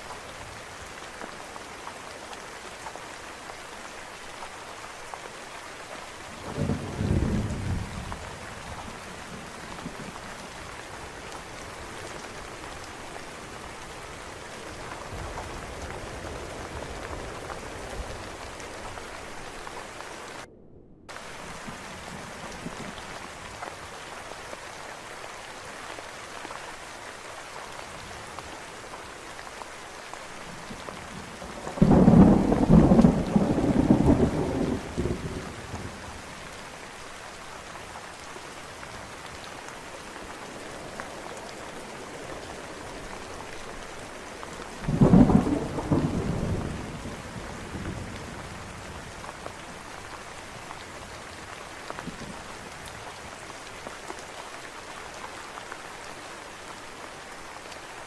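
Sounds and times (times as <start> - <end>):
steady rain: 0.0 - 20.5, 21.1 - 58.0
thunder claps crackling: 6.3 - 10.6, 30.5 - 36.4, 40.4 - 49.2.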